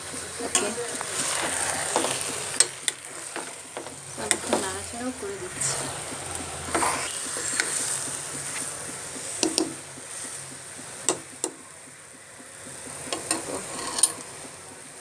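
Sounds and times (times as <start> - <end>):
faint steady hiss: 0.0 - 15.0
spoon scraping cooking pot: 0.4 - 11.5, 13.0 - 14.5.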